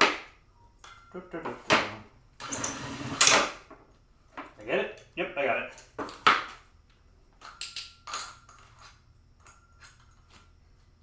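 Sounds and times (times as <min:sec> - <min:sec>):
light metal pieces clinking: 0:07.4 - 0:10.6.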